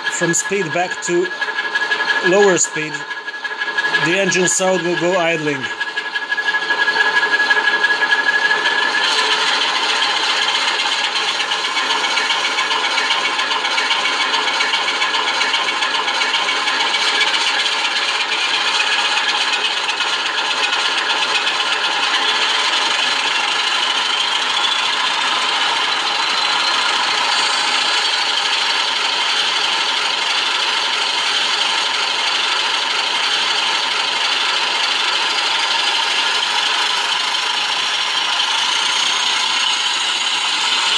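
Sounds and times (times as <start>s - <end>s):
thin tone: 0.0s - 1.4s, 2.2s - 3.1s, 3.9s - 5.8s
diesel engine through loudspeaker: 0.0s - 1.5s, 2.1s - 3.1s, 3.9s - 5.8s.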